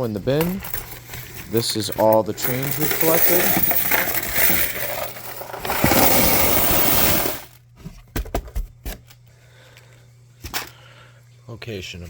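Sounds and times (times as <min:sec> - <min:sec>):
coins clinking into a bin: 0:00.0 - 0:07.6.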